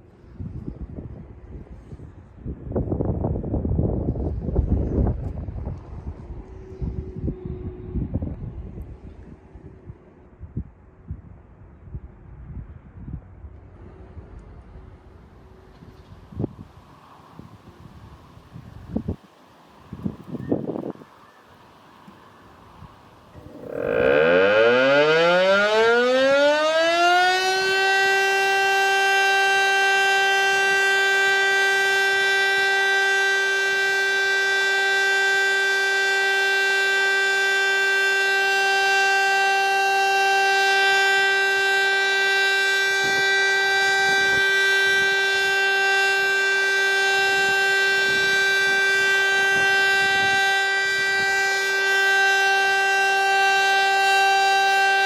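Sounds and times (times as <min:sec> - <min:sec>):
mechanical siren wailing: 0:23.3 - 0:55.0.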